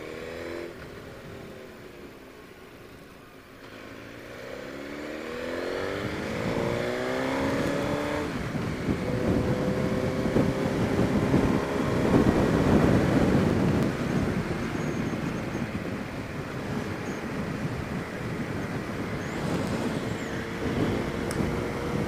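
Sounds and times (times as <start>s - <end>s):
motorcycle engine accelerating: 3.6s - 22.0s
wind rush on microphone: 5.5s - 22.0s.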